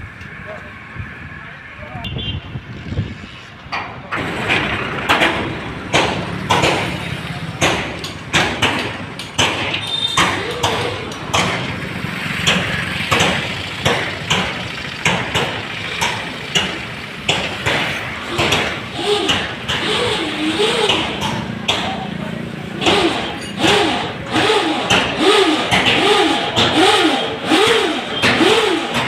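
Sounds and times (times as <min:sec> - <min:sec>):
engine hum: 0:02.6 - 0:29.0
sharp metal clanks: 0:03.8 - 0:11.8, 0:22.8 - 0:29.0.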